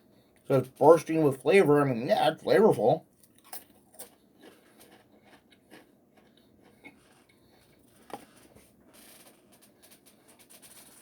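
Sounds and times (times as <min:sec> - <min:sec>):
potato crisp being chewed: 0:03.1 - 0:11.0.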